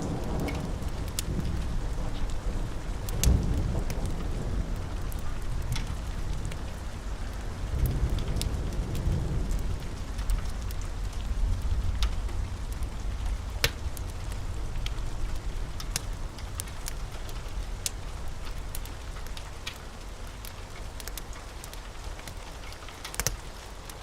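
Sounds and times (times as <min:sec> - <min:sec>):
low rolling thunder: 0:00.0 - 0:21.4
steady rain: 0:00.0 - 0:24.0
wood fire crackling: 0:00.0 - 0:24.0.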